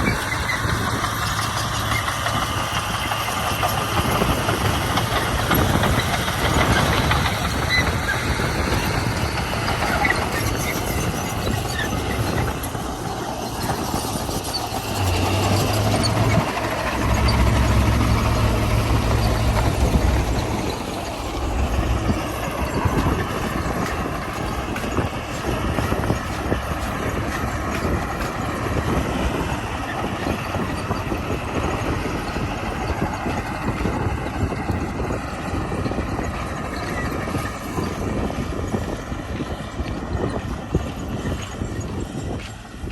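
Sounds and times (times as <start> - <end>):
bulldozer diesel engine running: 0.0 - 42.9.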